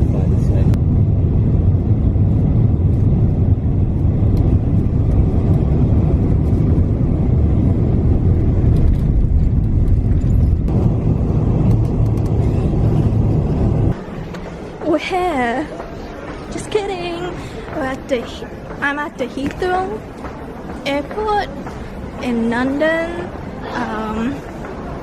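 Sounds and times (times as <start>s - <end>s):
jet engines and airflow rumble: 0.0s - 25.0s.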